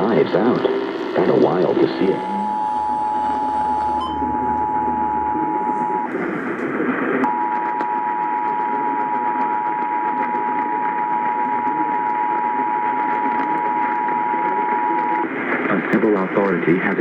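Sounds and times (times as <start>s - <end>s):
radio static: 0.0s - 17.0s
two-tone attention signal: 1.5s - 6.4s.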